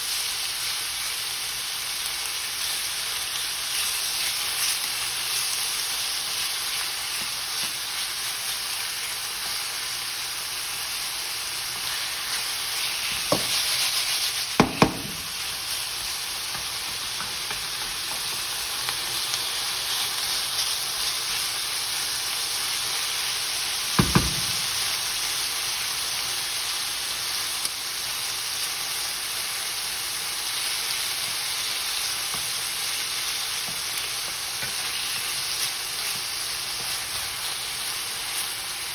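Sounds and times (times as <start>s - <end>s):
chicken sizzling in hot oil: 0.0s - 38.9s
utensil knocking against pan: 13.3s - 13.6s, 14.6s - 15.3s, 24.0s - 24.6s.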